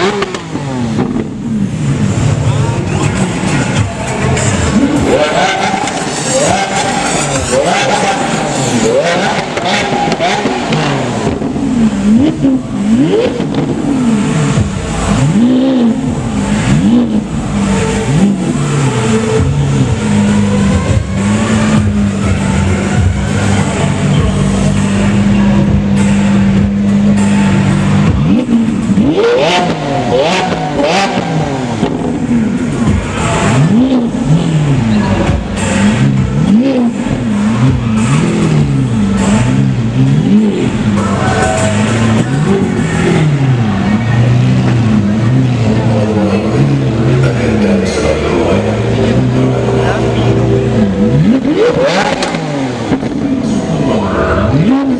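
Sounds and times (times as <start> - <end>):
exhaust pops crackling: 0.0 - 1.5, 2.9 - 22.4, 46.6 - 53.7
car engine revving: 0.0 - 54.9.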